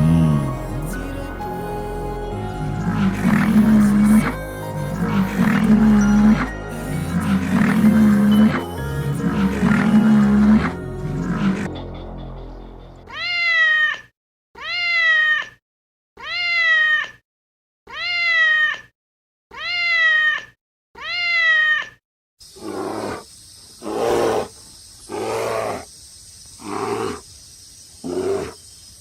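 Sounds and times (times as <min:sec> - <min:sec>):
cat meowing: 0:13.1 - 0:15.6, 0:16.2 - 0:17.2, 0:17.9 - 0:18.9, 0:19.5 - 0:22.0.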